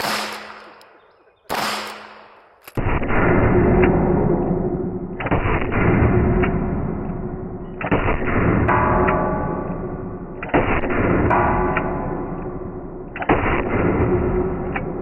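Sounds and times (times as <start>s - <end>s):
revolver shots echoing: 0.0s - 0.9s, 1.5s - 6.6s.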